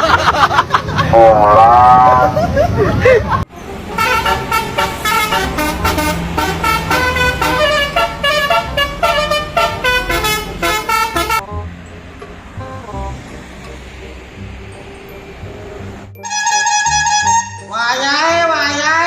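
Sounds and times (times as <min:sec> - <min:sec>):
multi-tone bus horn melody: 0:03.5 - 0:11.8, 0:16.2 - 0:19.0.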